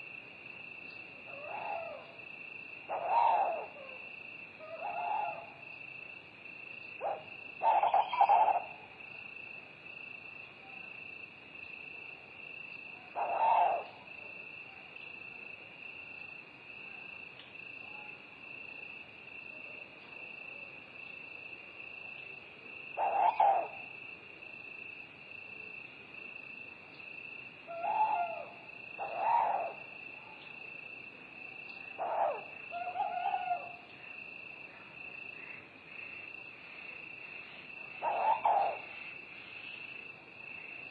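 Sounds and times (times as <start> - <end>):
crickets chirping: 0.0 - 40.9
owl hooting: 1.3 - 2.1, 2.9 - 4.0, 4.6 - 5.6, 7.0 - 8.8, 13.2 - 14.0, 23.0 - 23.9, 27.7 - 30.0, 32.0 - 33.8, 38.0 - 39.0.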